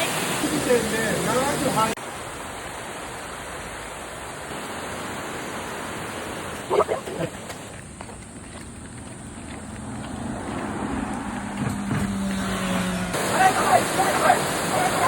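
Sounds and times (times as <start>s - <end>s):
waterfall rushing: 0.0s - 7.6s, 13.1s - 15.0s.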